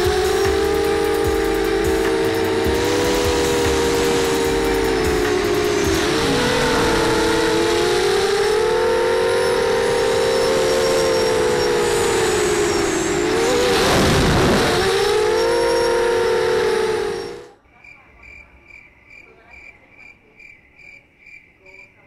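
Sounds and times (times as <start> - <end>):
quadcopter motors whining: 0.0 - 17.6.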